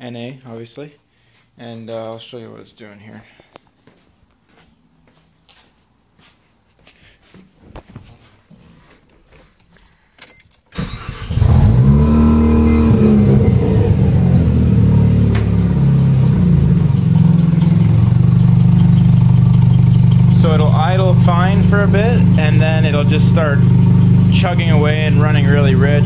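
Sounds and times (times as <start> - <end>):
rotary engine starting and idling: 10.7 - 26.0.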